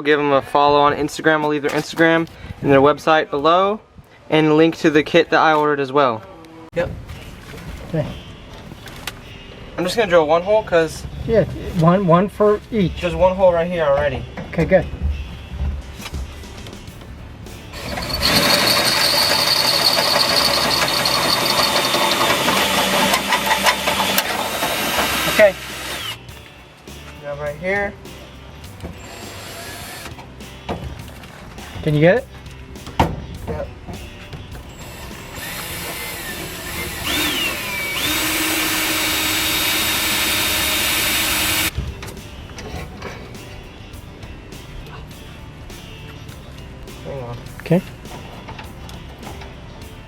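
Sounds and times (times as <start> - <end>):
electric drill whining: 17.7 - 26.2, 29.0 - 30.1, 34.7 - 41.7.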